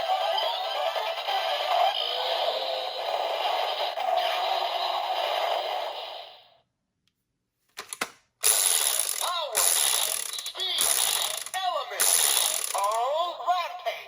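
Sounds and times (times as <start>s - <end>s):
electronic toy sound effect: 0.0s - 6.1s, 8.5s - 13.9s
loud ratcheting whirring: 8.4s - 13.0s.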